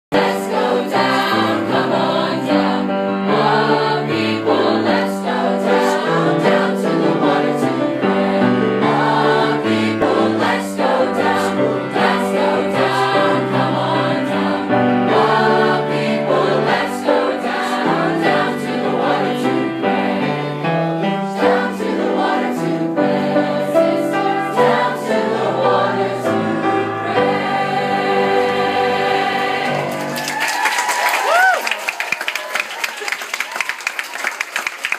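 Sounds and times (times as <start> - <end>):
choir singing in parts: 0.1 - 30.4.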